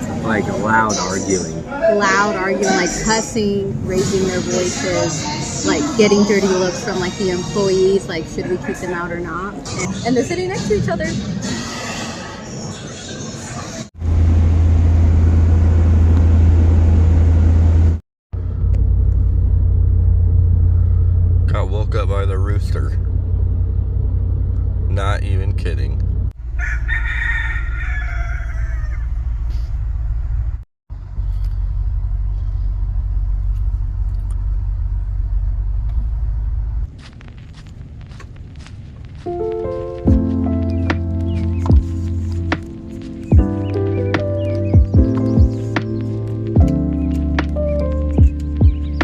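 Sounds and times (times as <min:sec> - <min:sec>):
vehicle rumbling on the move: 0:00.0 - 0:49.0.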